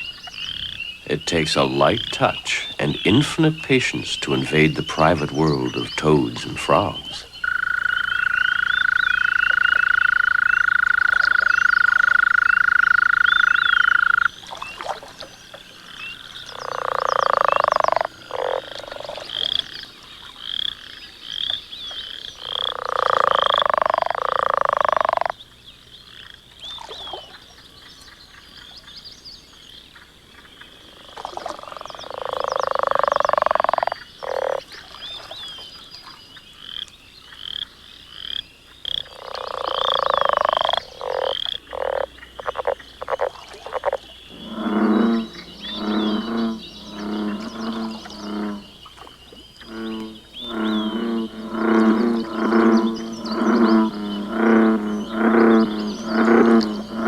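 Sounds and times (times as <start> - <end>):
loud croaking calls: 0.0 - 14.4, 15.7 - 25.3, 37.4 - 57.0.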